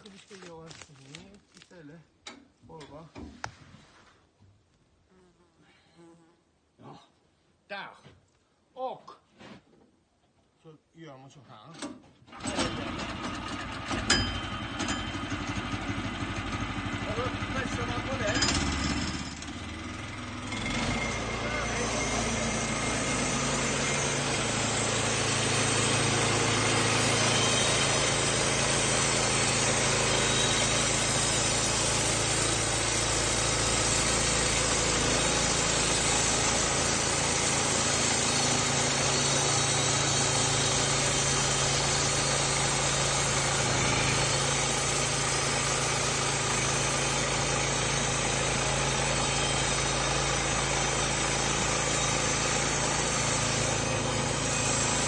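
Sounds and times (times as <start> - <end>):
bandsaw mill sawing log: 12.3 - 55.0.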